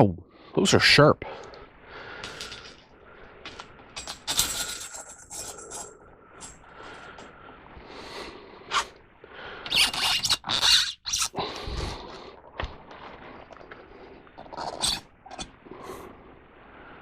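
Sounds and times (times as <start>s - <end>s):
metal scraping and rattling: 3.5s - 6.6s.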